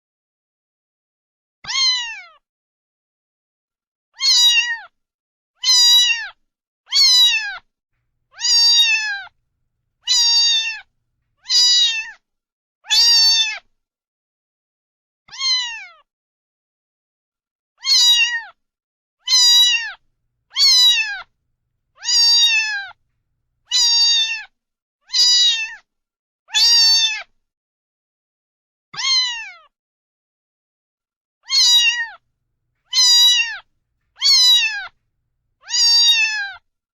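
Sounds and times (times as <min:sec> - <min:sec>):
cat meowing: 0:04.2 - 0:04.8, 0:06.9 - 0:07.5, 0:08.3 - 0:09.3, 0:10.0 - 0:12.1, 0:17.8 - 0:18.4, 0:19.3 - 0:21.3, 0:22.0 - 0:23.0, 0:23.7 - 0:24.4, 0:25.1 - 0:25.8, 0:31.5 - 0:32.2, 0:32.9 - 0:33.6, 0:34.2 - 0:35.0, 0:35.6 - 0:36.5.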